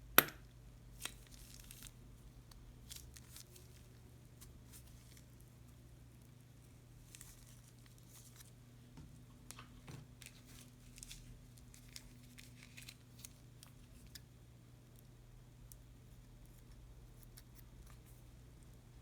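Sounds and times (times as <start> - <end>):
plastic bags crinkling and clicking: 9.5 - 13.8.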